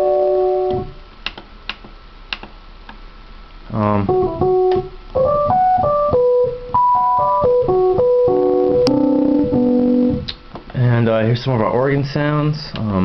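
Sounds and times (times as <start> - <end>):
electric piano playing: 0.0 - 1.0, 3.8 - 10.4.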